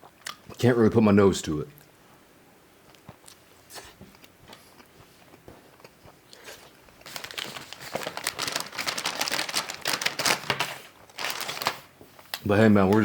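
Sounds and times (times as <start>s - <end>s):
chewing: 2.9s - 8.0s
crackling and crinkling: 2.9s - 13.0s.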